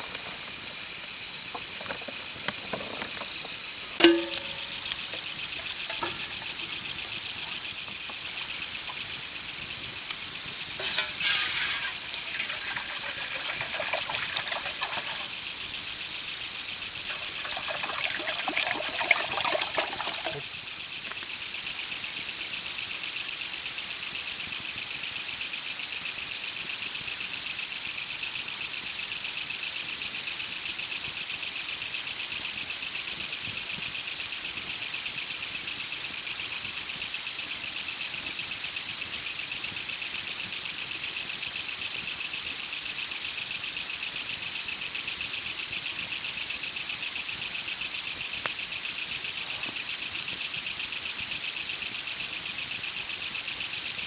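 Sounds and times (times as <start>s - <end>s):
insect chorus buzzing: 0.0s - 21.7s.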